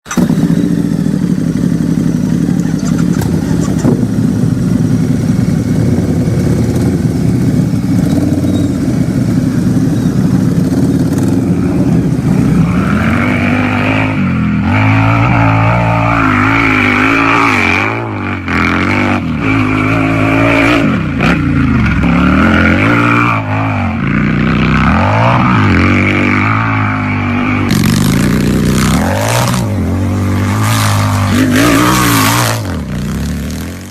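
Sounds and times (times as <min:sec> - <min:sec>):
motorcycle engine idling and revving: 0:00.0 - 0:33.9.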